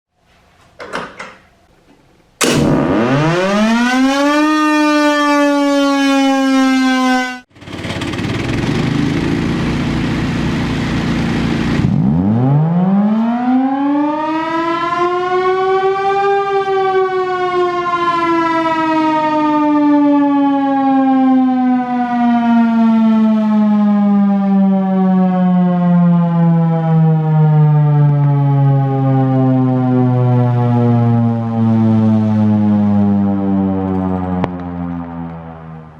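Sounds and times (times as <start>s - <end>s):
low hum: 2.4s - 4.4s
siren wailing: 2.4s - 7.5s, 12.0s - 35.9s.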